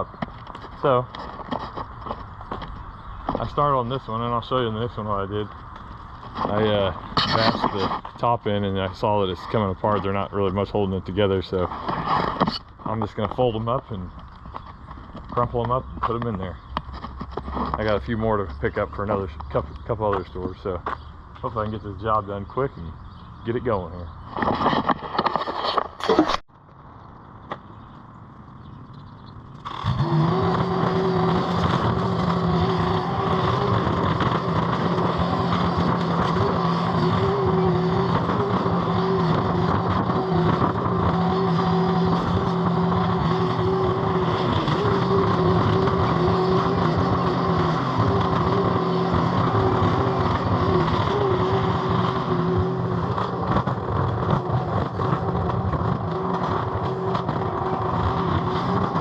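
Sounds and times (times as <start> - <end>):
skid steer engine running: 29.5 - 59.0.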